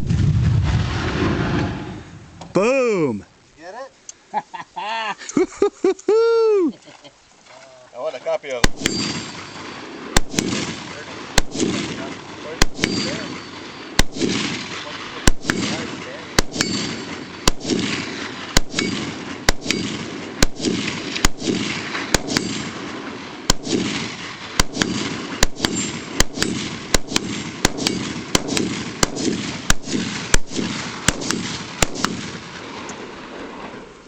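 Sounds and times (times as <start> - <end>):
rifle shots with echo: 8.6 - 33.8.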